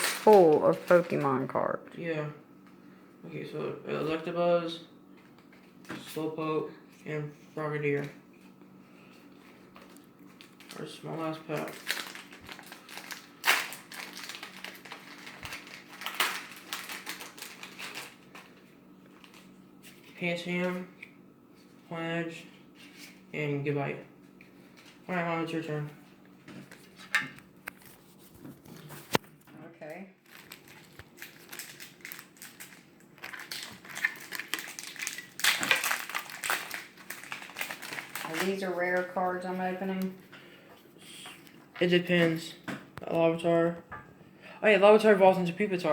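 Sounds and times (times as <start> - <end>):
foil pack crinkling: 0.0 - 1.6, 8.4 - 20.3, 30.2 - 40.1.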